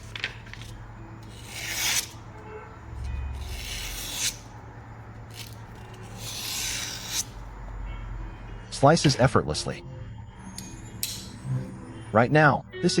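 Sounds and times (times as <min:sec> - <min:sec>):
knife slicing through paper: 0:00.0 - 0:02.2.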